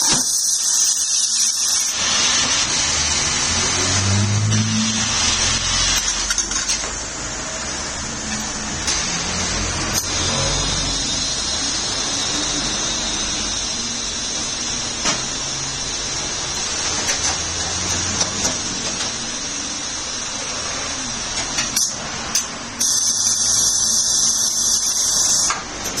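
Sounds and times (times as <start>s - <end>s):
steady workshop hiss: 0.0s - 26.0s
compressed air hissing: 8.8s - 16.9s.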